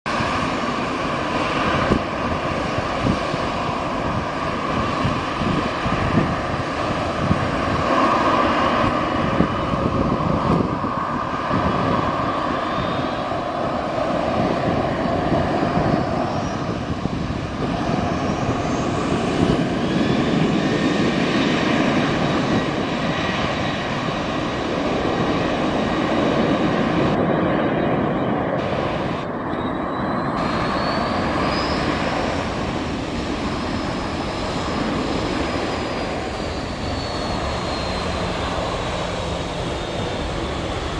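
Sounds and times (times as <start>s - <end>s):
jet engines at takeoff: 0.1s - 40.9s
high engine whines rising: 28.0s - 40.9s.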